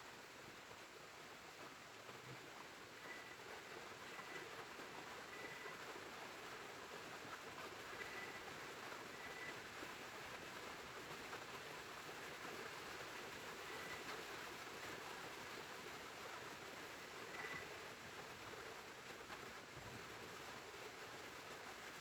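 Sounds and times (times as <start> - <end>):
steady rain falling: 0.0 - 22.0
faint cricket trills: 9.1 - 9.6.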